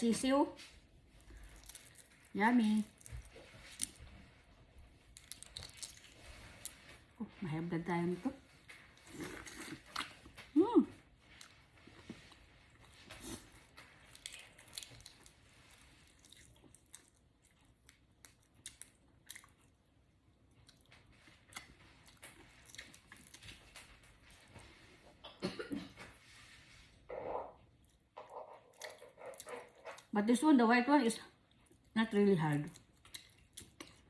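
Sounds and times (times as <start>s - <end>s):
person chewing wet smacks: 16.0s - 19.9s, 32.6s - 34.0s.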